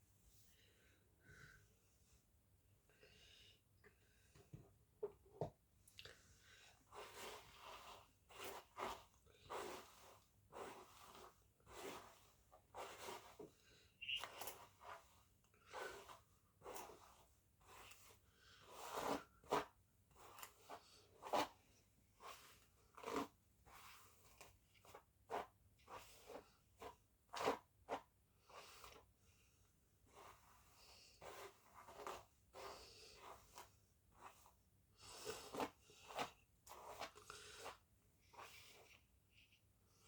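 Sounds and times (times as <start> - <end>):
soft taps and scrapes of handling: 3.8 - 6.0.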